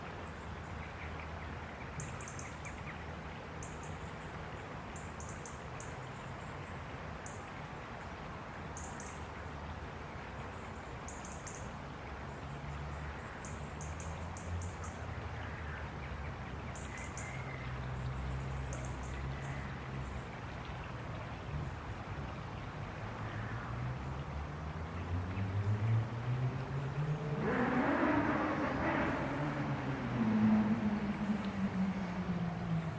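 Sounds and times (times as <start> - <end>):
river rushing: 21.6 - 32.9.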